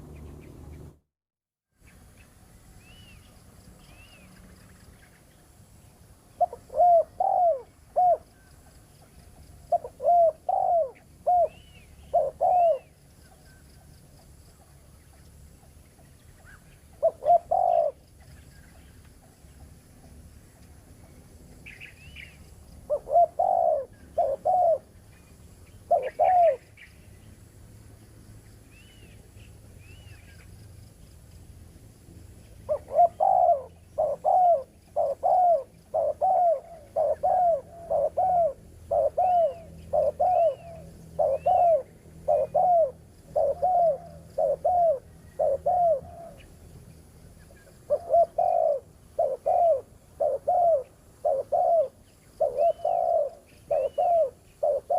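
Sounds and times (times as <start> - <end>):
dove cooing: 6.4 - 8.5, 9.7 - 13.0, 16.9 - 18.1, 21.6 - 25.0, 25.9 - 26.8, 32.6 - 46.5, 47.6 - 54.9
faint high bird chirps: 6.4 - 15.3, 21.0 - 27.4, 32.7 - 46.6, 47.3 - 54.9.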